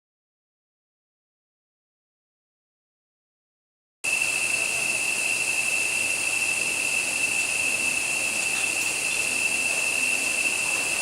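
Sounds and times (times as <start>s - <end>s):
insect chorus drone: 4.0s - 11.0s
constant hiss: 4.1s - 11.0s.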